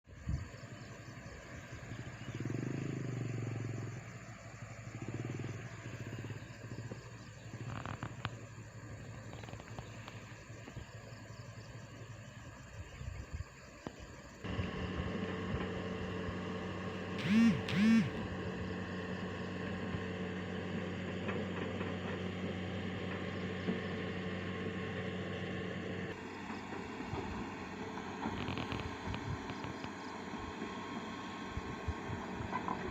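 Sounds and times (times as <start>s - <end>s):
excavator diesel engine: 14.4s - 32.9s.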